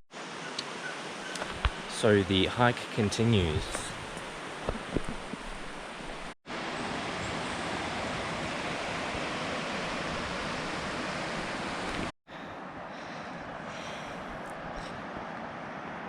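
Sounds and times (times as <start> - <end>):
river water rushing: 0.2 - 12.1.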